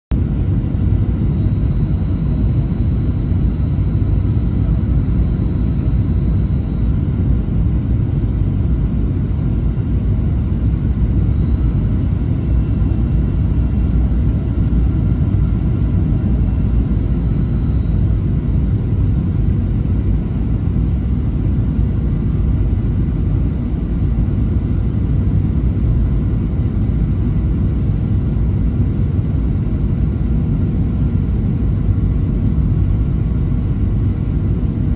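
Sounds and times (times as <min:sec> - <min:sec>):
aircraft cabin rumble: 0:00.1 - 0:26.9.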